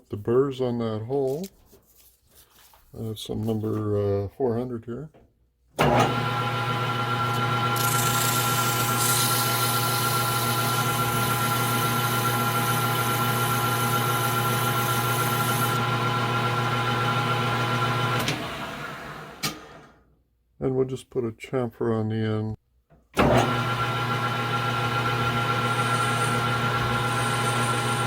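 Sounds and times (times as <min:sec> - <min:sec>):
metal lathe motor hum: 0:05.9 - 0:19.4, 0:23.2 - 0:28.0
machine winding down: 0:05.9 - 0:19.8, 0:23.2 - 0:28.0
abrasive paper hissing on spinning steel: 0:07.8 - 0:15.8.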